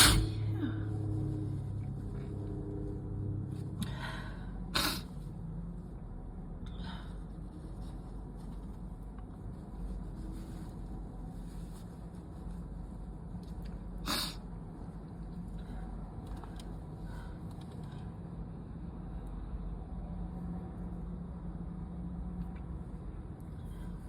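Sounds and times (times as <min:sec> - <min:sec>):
person sneezing: 0:00.0 - 0:00.8, 0:04.7 - 0:05.1, 0:14.0 - 0:14.4
low background hum: 0:00.0 - 0:24.0
person sniffing: 0:04.8 - 0:05.1, 0:14.0 - 0:14.4.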